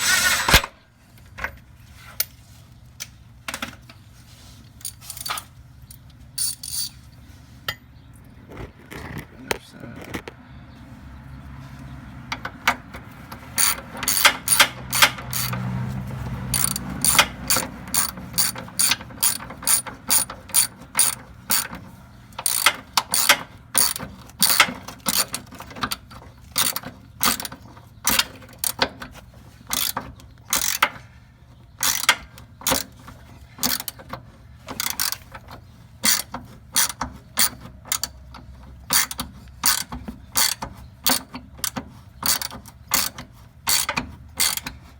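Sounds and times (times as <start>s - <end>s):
socket ratchet clicking: 13.6s - 15.6s, 16.5s - 21.7s, 22.4s - 25.4s, 29.8s - 30.9s, 31.8s - 32.8s, 33.6s - 34.0s, 36.0s - 38.2s, 38.9s - 44.7s.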